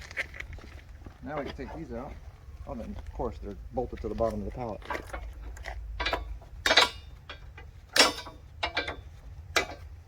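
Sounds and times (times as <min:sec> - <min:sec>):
metal parts clanking and rattling: 0:04.2 - 0:10.0.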